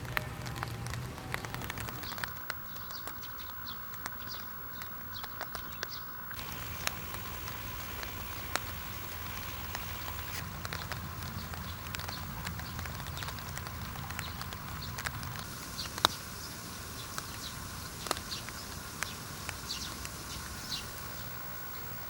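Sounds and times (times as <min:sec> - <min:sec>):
sharp drop ticks: 0:00.0 - 0:16.2
rain falling: 0:00.0 - 0:22.0
small bird chirping: 0:00.0 - 0:22.0.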